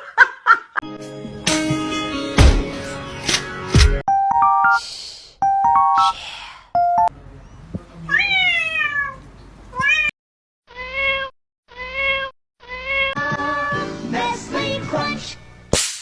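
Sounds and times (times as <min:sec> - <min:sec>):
cat meowing: 0:08.1 - 0:10.1.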